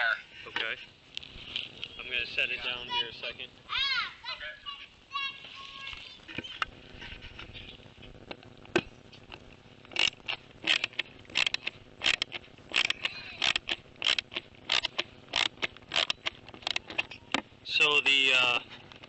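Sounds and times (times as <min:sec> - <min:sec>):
microphone handling clicks and scrapes: 0:00.5 - 0:02.0.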